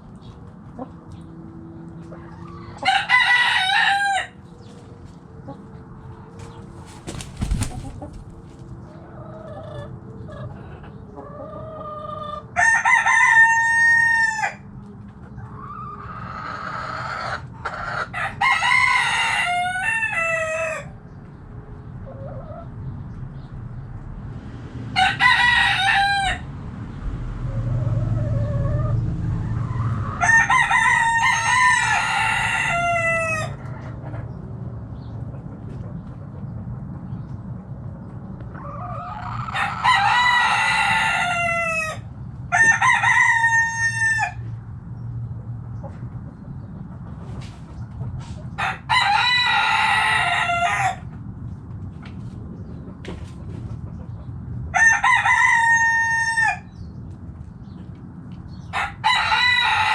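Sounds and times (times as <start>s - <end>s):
hens clucking: 0.2s - 12.6s, 14.8s - 20.8s
roosters crowing: 2.0s - 4.7s, 5.3s - 21.1s, 24.8s - 34.0s, 38.5s - 44.6s, 48.4s - 51.2s, 54.6s - 57.0s, 58.5s - 59.9s.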